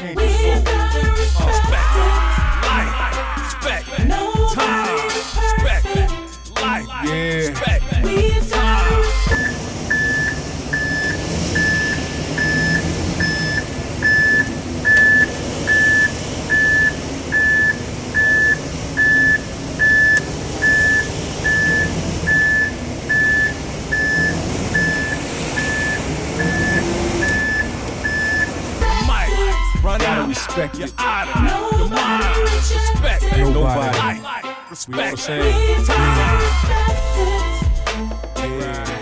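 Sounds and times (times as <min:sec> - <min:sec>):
truck reversing alarm beeping: 0:00.0 - 0:34.0, 0:35.4 - 0:39.0
truck engine rumbling: 0:00.0 - 0:34.2, 0:35.4 - 0:39.0.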